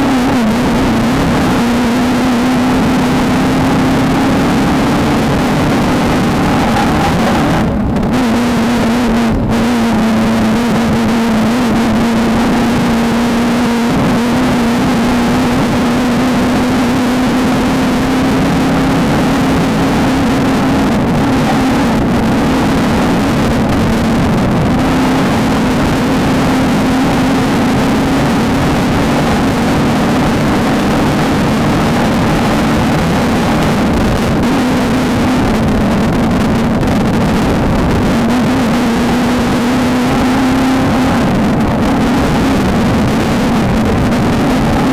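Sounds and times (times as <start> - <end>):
loud rush of noise: 0.0 - 44.9
race car engine at high revs: 0.0 - 44.9.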